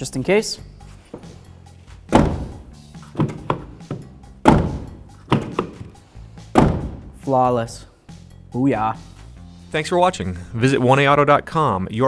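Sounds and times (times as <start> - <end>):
car door latch clunks: 2.1 - 6.0, 6.6 - 7.2.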